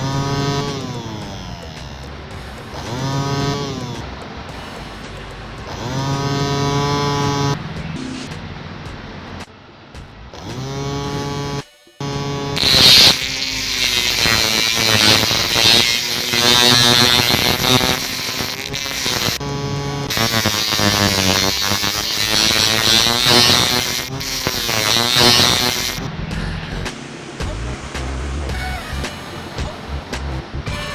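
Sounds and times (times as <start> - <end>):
small motor whirring: 0.0 - 4.8, 5.7 - 7.6, 10.4 - 26.1
high hiss: 12.3 - 19.4, 20.0 - 26.1.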